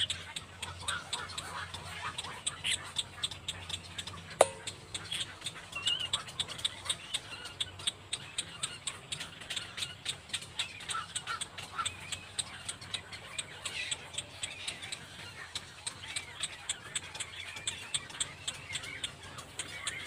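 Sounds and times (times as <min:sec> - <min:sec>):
birds chirping: 0:00.0 - 0:20.0
sharp click: 0:04.0 - 0:06.7.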